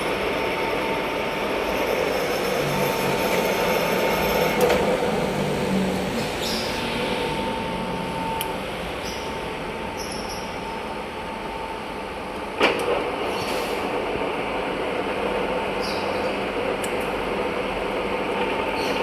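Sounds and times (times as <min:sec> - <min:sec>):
lathe running: 0:00.0 - 0:10.0.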